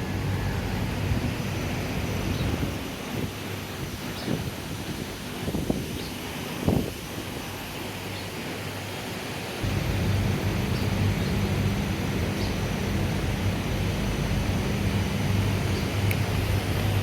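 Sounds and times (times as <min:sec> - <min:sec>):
wind noise: 0:00.0 - 0:07.8
low machine hum: 0:09.6 - 0:17.0.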